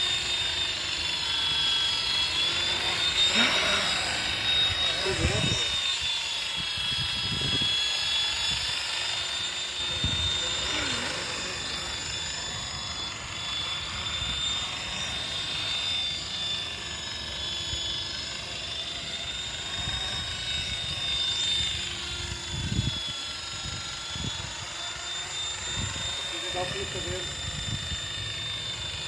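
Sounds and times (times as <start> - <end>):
electric motor and rotor whine: 0.0 - 29.0
wind rumbling on microphone: 6.5 - 7.8, 9.8 - 10.6, 19.8 - 24.7, 25.7 - 28.1.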